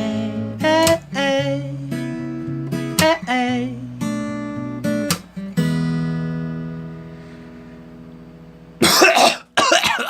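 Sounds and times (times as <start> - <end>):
acoustic guitar chord ringing: 0.0 - 10.0
person coughing and clearing throat: 8.8 - 10.0.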